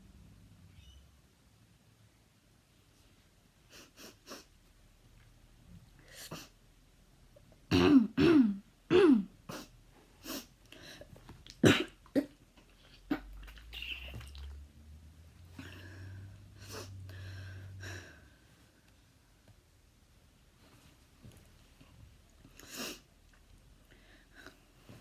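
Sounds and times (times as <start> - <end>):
girl clearing throat: 7.7 - 9.7, 11.6 - 12.4
girl coughing: 7.7 - 9.7, 11.6 - 12.4.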